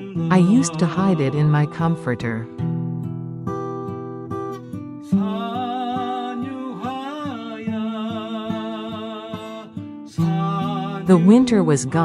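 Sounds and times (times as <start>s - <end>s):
person singing with vibrato: 0.0s - 2.5s, 5.0s - 12.0s
plucked acoustic guitar: 0.0s - 12.0s.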